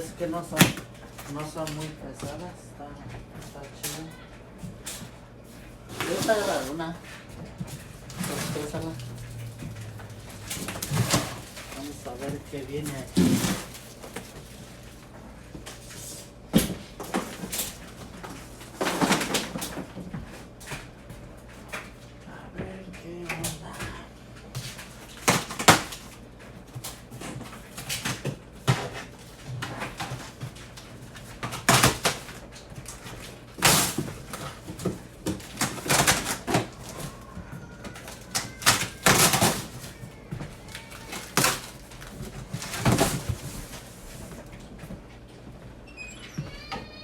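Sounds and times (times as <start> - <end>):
packaging rustling: 5.9 - 15.1, 31.0 - 44.5.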